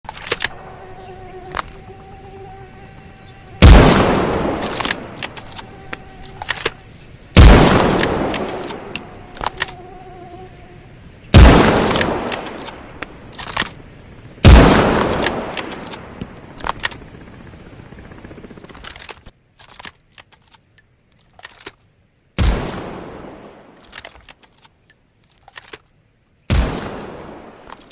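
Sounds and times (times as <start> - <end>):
faint steady hum: 0.1 - 27.8
rifle shots echoing: 3.6 - 5.4, 7.4 - 9.0, 11.4 - 12.6, 14.4 - 16.1.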